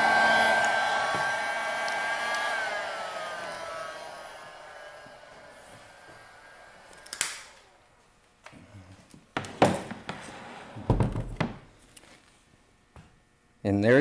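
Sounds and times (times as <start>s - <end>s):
heat gun fan whirring down: 0.0s - 8.0s.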